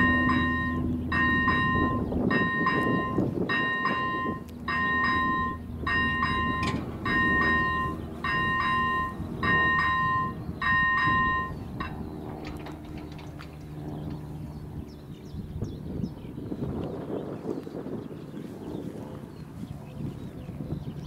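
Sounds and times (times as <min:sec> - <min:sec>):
level crossing warning bell: 0:00.0 - 0:13.2
train rumbling past: 0:00.0 - 0:15.6.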